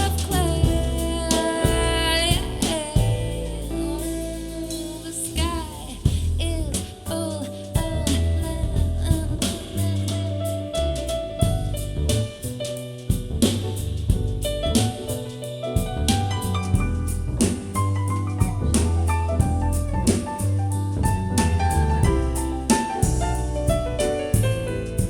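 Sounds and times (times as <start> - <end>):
bass line: 0.0 - 25.0
drum kit: 0.0 - 25.0
soul jazz music: 0.0 - 25.0.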